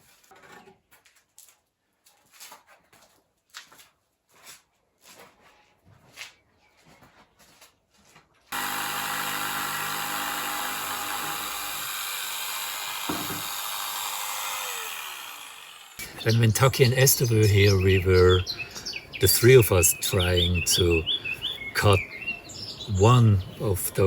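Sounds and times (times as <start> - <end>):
electric power tool running: 8.5 - 16.2.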